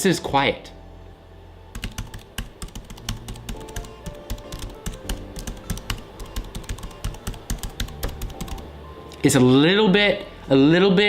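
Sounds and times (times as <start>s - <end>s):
fast typing on keyboard: 1.7s - 8.7s.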